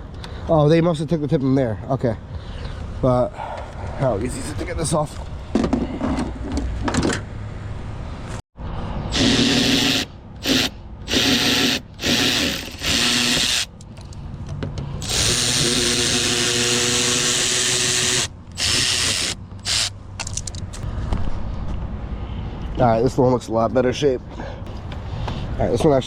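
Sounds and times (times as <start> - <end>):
cordless power tool whirring: 9.1 - 13.7, 15.0 - 19.9.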